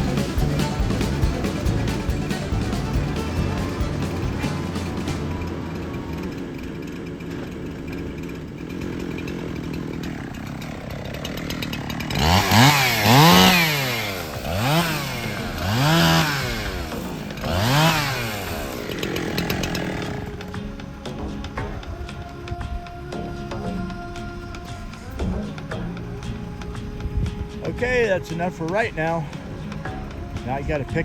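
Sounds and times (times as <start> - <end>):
chainsaw engine revving: 0.0 - 22.4.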